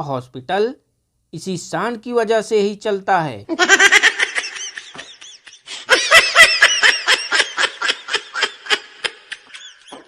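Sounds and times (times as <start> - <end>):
person laughing: 3.5 - 10.0.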